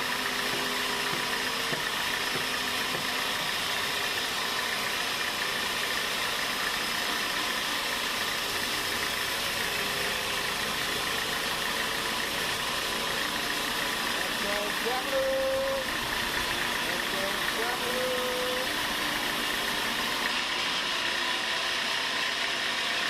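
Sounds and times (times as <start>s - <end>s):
sawmill machinery running: 0.0s - 23.0s.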